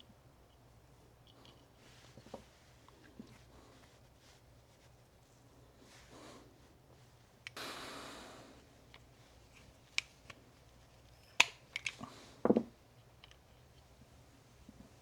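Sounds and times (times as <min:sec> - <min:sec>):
brief hiss: 0:07.6 - 0:08.6
small metal parts clicking and tapping: 0:11.0 - 0:12.1.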